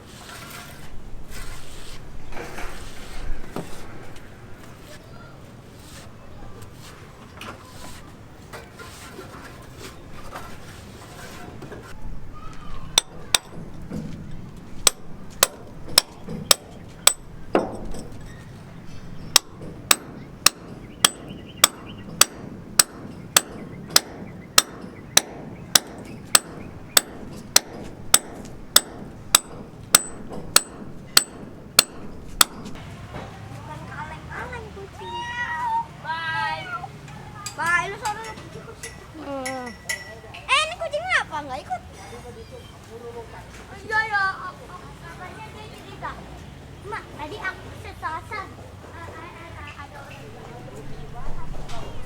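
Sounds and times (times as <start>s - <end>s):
hammer blows: 11.9s - 32.8s.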